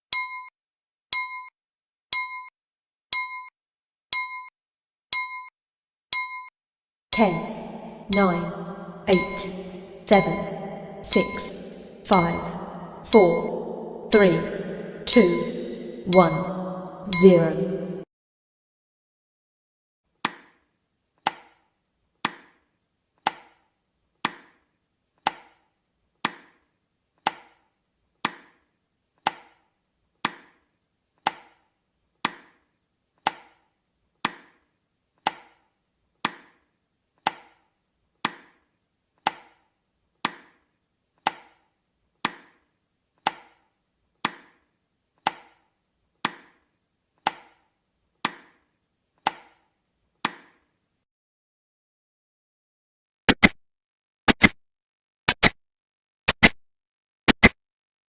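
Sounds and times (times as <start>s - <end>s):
timer ticking clicks: 2.1s - 2.5s, 3.1s - 3.5s, 4.1s - 4.5s, 5.1s - 5.5s, 6.1s - 6.5s, 7.1s - 18.0s, 57.3s - 57.6s.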